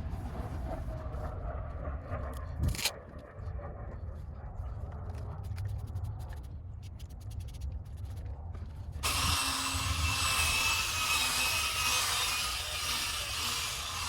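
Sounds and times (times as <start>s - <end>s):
power drill sanding plastic: 9.0s - 14.0s.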